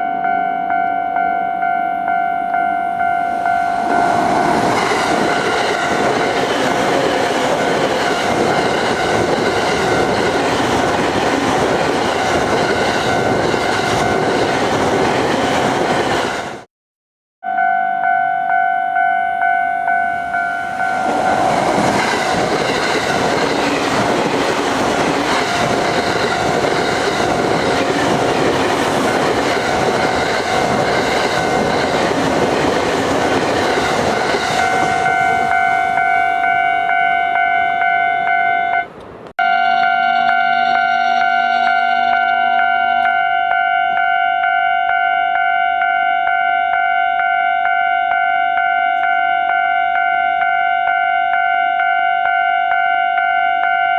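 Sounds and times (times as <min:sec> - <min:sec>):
level-crossing bell ringing: 0:00.0 - 0:06.4, 0:17.4 - 0:23.3, 0:34.5 - 0:38.9, 0:39.5 - 0:53.9
train passing: 0:00.1 - 0:16.7, 0:18.5 - 0:53.9.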